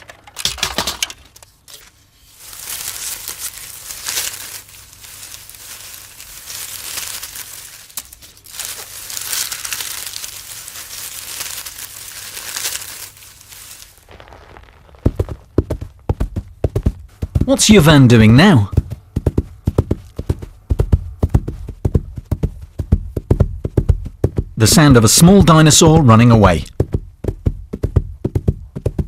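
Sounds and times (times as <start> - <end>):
videotape crumpling by hand: 1.3 - 16.0.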